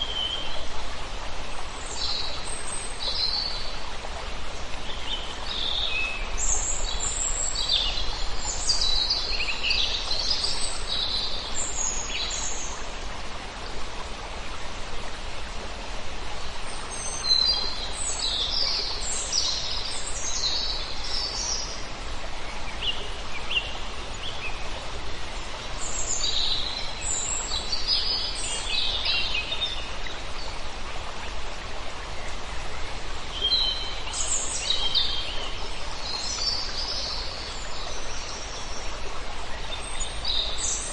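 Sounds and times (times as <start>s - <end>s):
flowing water: 0.0s - 40.9s
songbirds singing: 16.4s - 31.4s, 32.0s - 40.9s.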